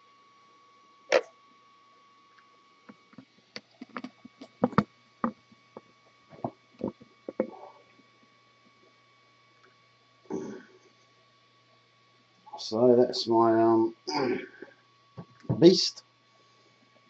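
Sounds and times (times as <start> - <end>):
faint electrical hum: 0.0 - 17.0.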